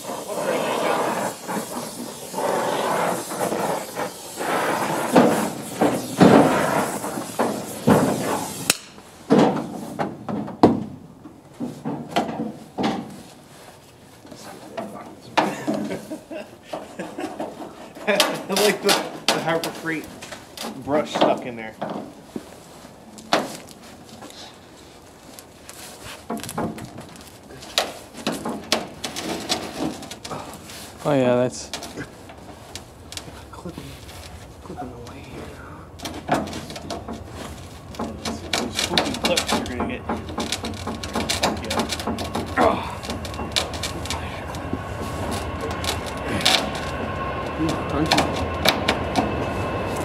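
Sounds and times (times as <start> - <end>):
sharp metallic click: 8.7 - 9.0
scraping and rattling metal: 25.8 - 50.0
sharp clicks and knocks: 36.0 - 49.4.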